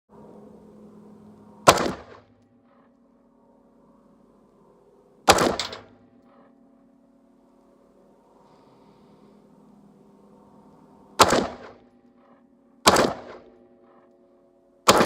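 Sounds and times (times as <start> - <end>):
gunshots: 1.7 - 2.2, 5.3 - 5.9, 11.2 - 11.8, 12.8 - 13.5.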